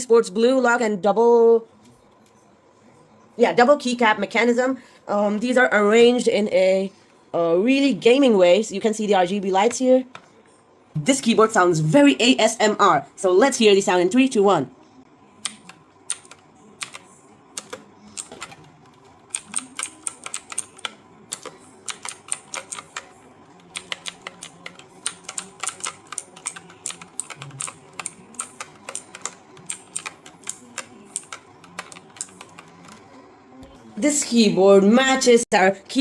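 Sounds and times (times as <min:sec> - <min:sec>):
mechanical keyboard typing: 0:15.4 - 0:33.0.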